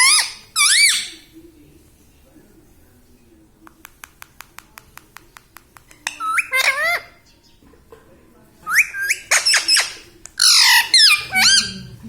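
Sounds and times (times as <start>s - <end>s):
parrot squawking and whistling: 0.0s - 1.2s, 8.7s - 11.9s.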